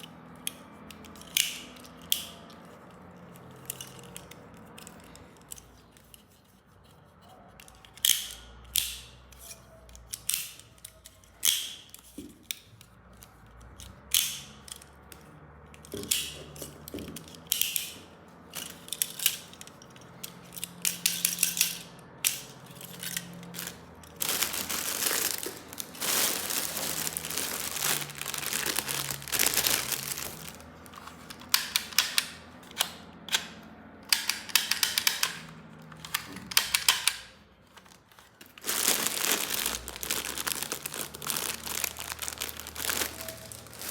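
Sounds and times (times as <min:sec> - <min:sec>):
plastic toy clicks and snaps: 0:00.0 - 0:02.6, 0:07.6 - 0:16.4, 0:17.1 - 0:18.0, 0:18.6 - 0:23.7, 0:30.9 - 0:37.4
packaging crinkling: 0:22.4 - 0:31.6, 0:37.6 - 0:43.9.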